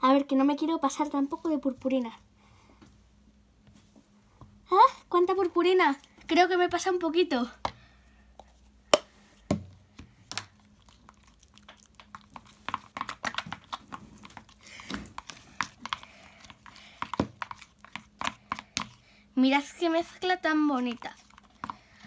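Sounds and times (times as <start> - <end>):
spoon stirring in a bowl: 10.0 - 19.1, 19.7 - 22.0.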